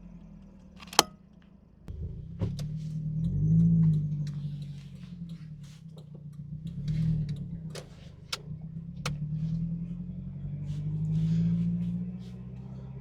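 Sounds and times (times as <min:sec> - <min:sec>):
engine running under load: 0:00.0 - 0:13.0
sharp clicks: 0:01.9 - 0:09.4.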